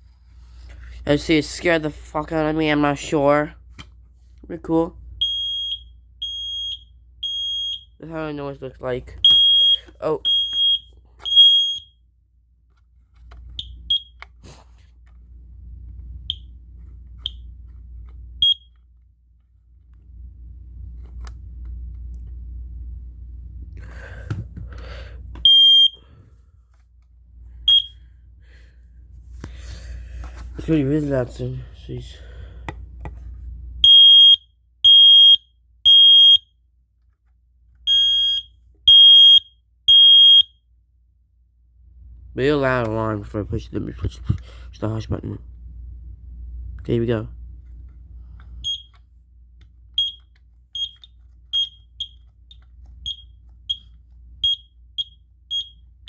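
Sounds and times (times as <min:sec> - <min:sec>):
smoke alarm chirps: 0:05.2 - 0:08.1, 0:09.2 - 0:12.0, 0:13.6 - 0:14.3, 0:16.3 - 0:16.6, 0:18.4 - 0:18.8, 0:25.4 - 0:26.1, 0:27.6 - 0:28.0, 0:33.8 - 0:36.5, 0:37.9 - 0:40.6, 0:48.6 - 0:49.0, 0:50.0 - 0:56.0
smoke alarm beeping: 0:05.2 - 0:08.6, 0:09.2 - 0:12.0, 0:13.6 - 0:14.3, 0:16.3 - 0:16.5, 0:18.4 - 0:18.8, 0:25.4 - 0:26.1, 0:27.6 - 0:28.0, 0:33.8 - 0:36.5, 0:37.9 - 0:40.7, 0:48.6 - 0:49.0, 0:50.0 - 0:56.0.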